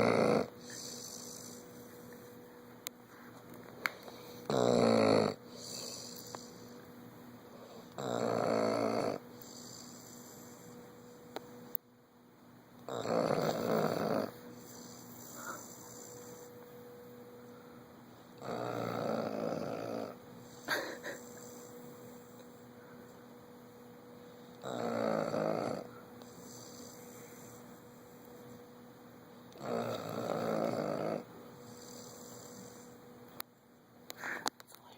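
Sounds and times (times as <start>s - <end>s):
dog snoring: 0.0s - 2.2s, 4.1s - 6.8s, 7.6s - 11.0s, 12.9s - 16.7s, 18.4s - 22.5s, 24.6s - 28.6s, 29.5s - 33.0s
faint steady hum: 0.0s - 34.9s.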